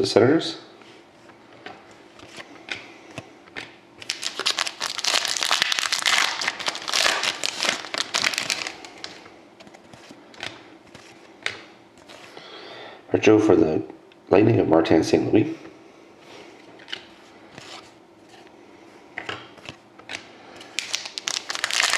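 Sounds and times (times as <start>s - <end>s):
wrapper crinkling: 4.0s - 9.2s, 20.7s - 21.9s.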